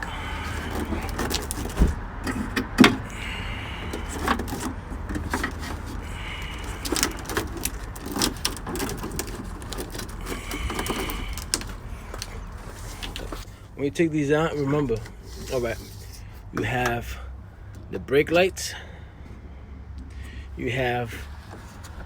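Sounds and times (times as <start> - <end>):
plastic clips clicking and knocking: 3.9 - 13.4.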